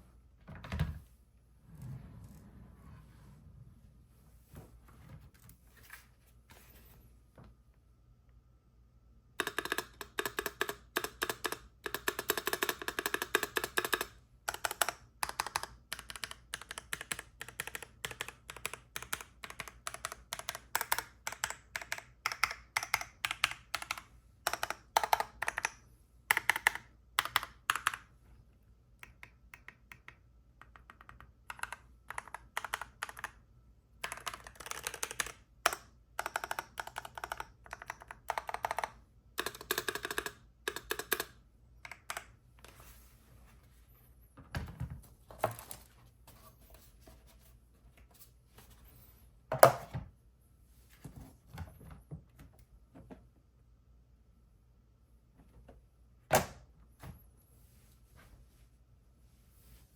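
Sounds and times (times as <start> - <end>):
mechanical keyboard key clacks: 34.0 - 41.3.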